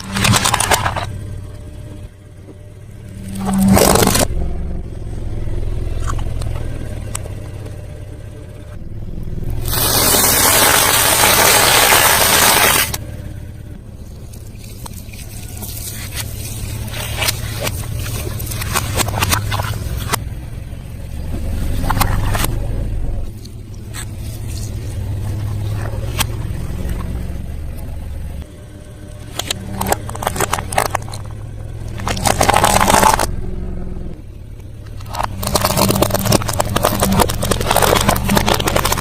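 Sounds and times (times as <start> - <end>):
car engine idling: 0.0 - 39.0
chewing and crunching food: 14.2 - 20.2, 29.3 - 33.3, 34.8 - 39.0.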